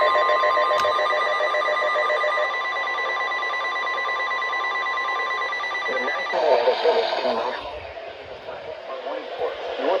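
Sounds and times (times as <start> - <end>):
long high-pitched alarm beep: 0.0 - 7.7
radio hiss: 5.9 - 10.0.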